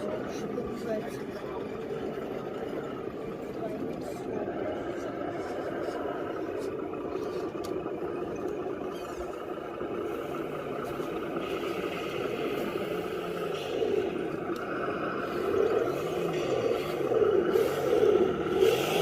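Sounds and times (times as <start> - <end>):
toy car motor whirring: 5.2 - 19.0.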